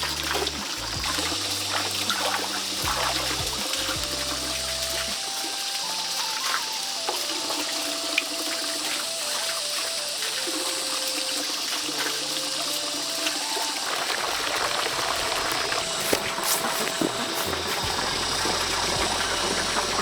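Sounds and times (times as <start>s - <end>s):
running water rushing: 0.0s - 20.0s
slow instrumental melody: 0.0s - 20.0s.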